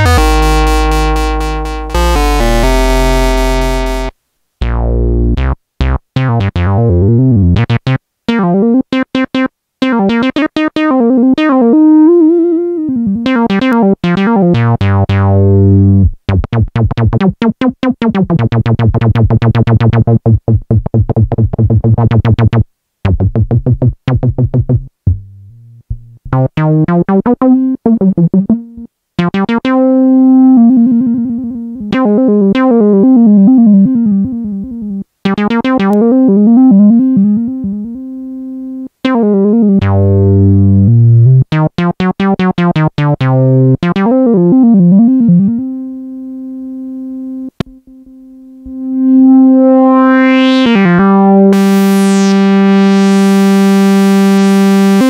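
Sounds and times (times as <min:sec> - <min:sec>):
synthesizer bass and lead lines: 0:00.0 - 0:55.0.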